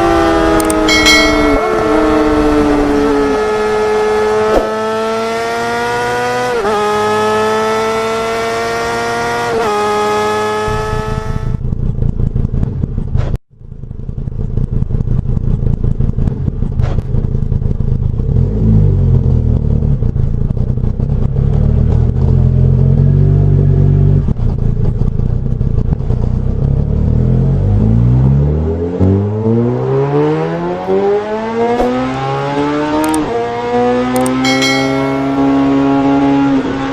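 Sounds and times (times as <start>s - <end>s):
low rumbling engine: 0.0s - 5.5s, 29.1s - 36.9s
motorcycle engine revving: 0.0s - 13.1s, 25.6s - 36.9s.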